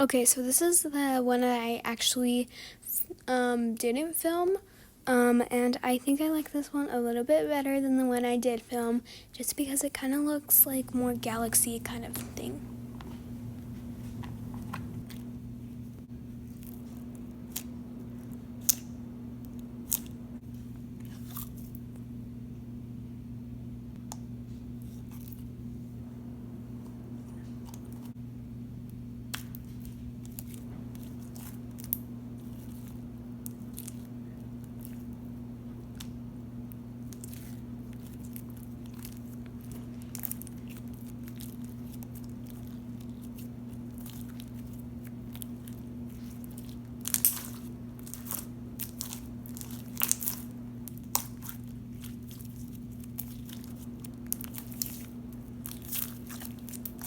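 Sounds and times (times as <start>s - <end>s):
steady low hum: 0.0s - 57.0s
slime squished by hand: 37.0s - 57.0s.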